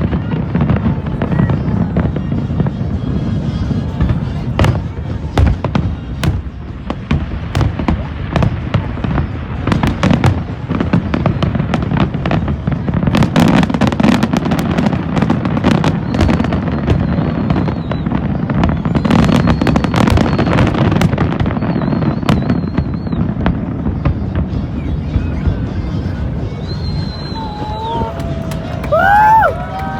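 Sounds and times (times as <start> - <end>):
fireworks crackling and popping: 0.0 - 29.9
high warbling whistle: 26.7 - 29.9.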